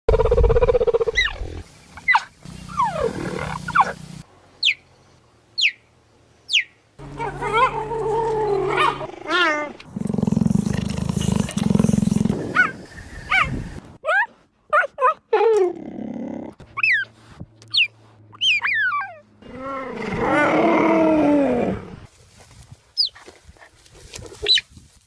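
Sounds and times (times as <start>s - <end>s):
big cat growling: 7.2s - 12.6s
big cat chirping: 8.6s - 13.6s, 17.7s - 19.2s.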